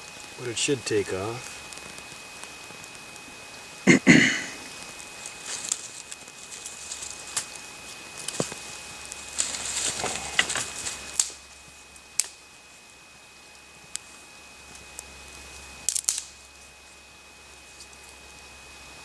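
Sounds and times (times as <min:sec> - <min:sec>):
spark striker scraping: 0:04.6 - 0:11.4.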